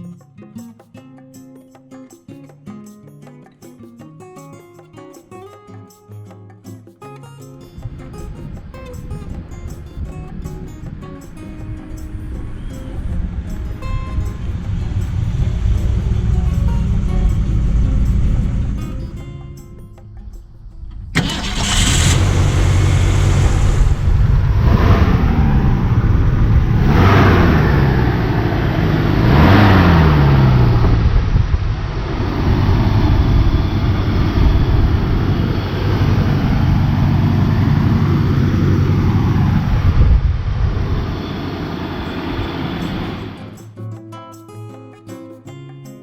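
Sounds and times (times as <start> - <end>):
car engine idling: 12.0 - 19.2, 20.8 - 43.6
car engine starting and revving: 14.4 - 19.1, 20.9 - 43.6.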